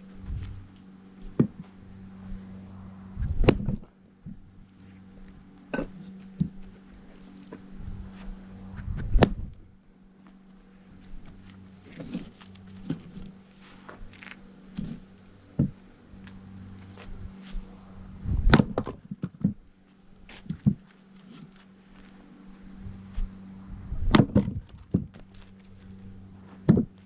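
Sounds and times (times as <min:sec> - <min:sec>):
steady low hum: 0:00.0 - 0:27.0
axe splitting firewood: 0:01.2 - 0:01.7, 0:03.2 - 0:04.4, 0:08.8 - 0:09.6, 0:11.2 - 0:13.3, 0:13.9 - 0:15.8, 0:18.4 - 0:19.6, 0:20.2 - 0:21.5, 0:24.0 - 0:25.6, 0:26.6 - 0:27.0.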